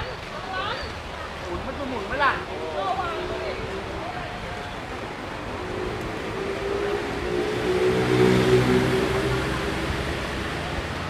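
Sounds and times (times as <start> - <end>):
street background noise: 0.0 - 11.0
vehicle engine passing by: 2.9 - 11.0.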